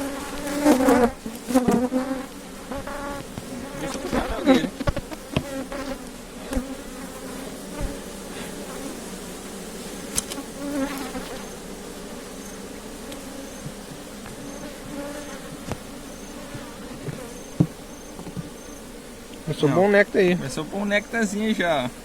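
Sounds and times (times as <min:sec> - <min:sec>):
bees buzzing: 0:00.0 - 0:22.0
wooden knocks: 0:16.6 - 0:18.6.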